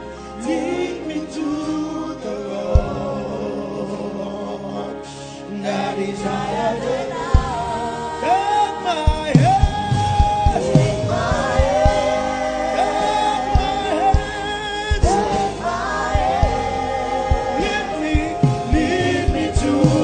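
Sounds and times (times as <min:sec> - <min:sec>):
voices singing over band: 0:00.0 - 0:20.0
drum hits: 0:02.8 - 0:03.0, 0:07.3 - 0:07.7, 0:09.1 - 0:12.4, 0:13.6 - 0:20.0.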